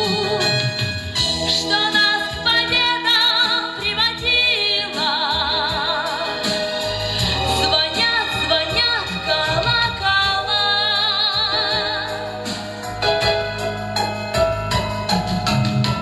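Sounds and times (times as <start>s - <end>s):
slow instrumental melody: 4.8s - 16.0s.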